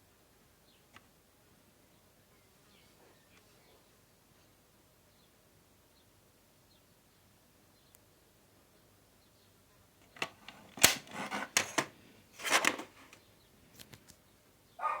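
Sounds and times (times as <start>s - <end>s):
plastic case clicks: 10.0s - 13.2s
packaging rustling: 10.2s - 13.2s.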